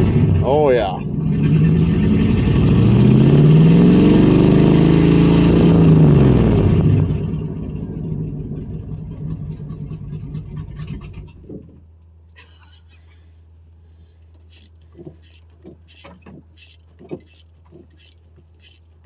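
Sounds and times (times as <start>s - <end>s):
car engine revving then idling: 0.0s - 11.8s.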